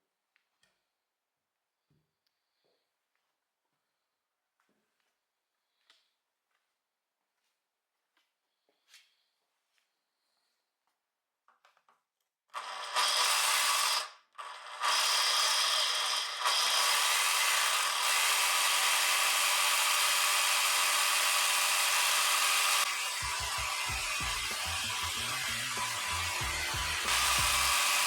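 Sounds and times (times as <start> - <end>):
jigsaw sawing wood: 12.6 - 28.0.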